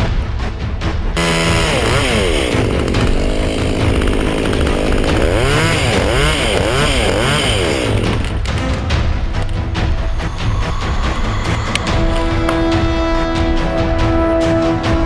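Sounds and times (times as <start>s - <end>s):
chainsaw revving: 1.2s - 8.7s.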